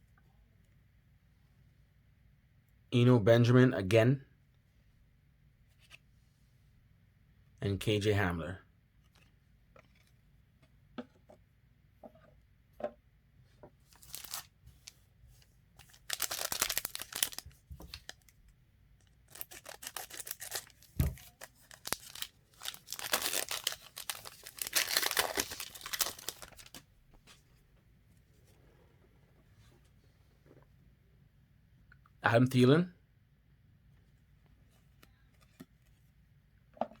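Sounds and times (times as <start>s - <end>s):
wrapper tearing and crinkling: 14.0s - 14.5s, 15.8s - 18.2s, 19.3s - 26.8s.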